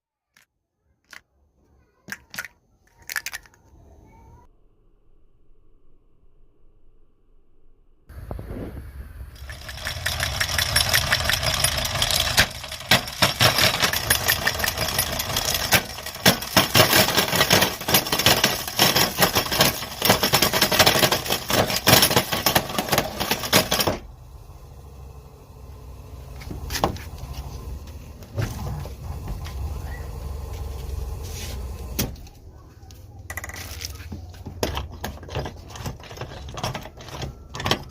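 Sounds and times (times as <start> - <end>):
plastic dice crunching: 2.1 - 3.7.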